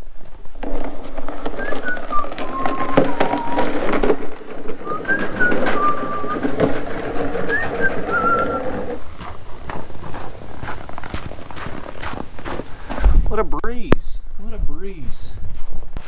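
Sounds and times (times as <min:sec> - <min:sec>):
high squeaking: 0:00.0 - 0:12.8
dolly casters rolling: 0:00.0 - 0:13.2.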